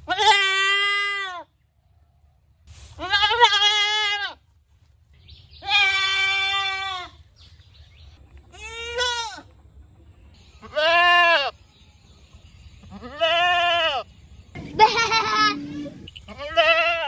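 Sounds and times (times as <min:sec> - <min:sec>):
goat bleating: 0:14.6 - 0:17.0.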